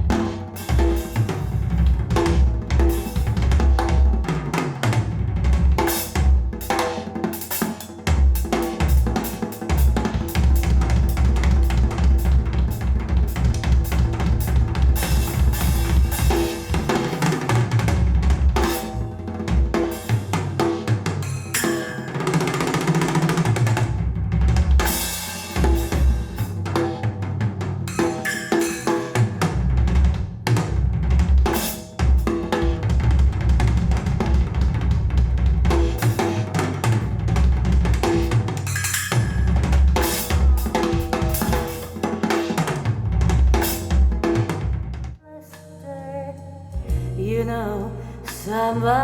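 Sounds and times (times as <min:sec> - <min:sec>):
drum kit beat: 0:00.0 - 0:45.2, 0:46.8 - 0:47.5
sliding pitched notes: 0:45.6 - 0:49.0.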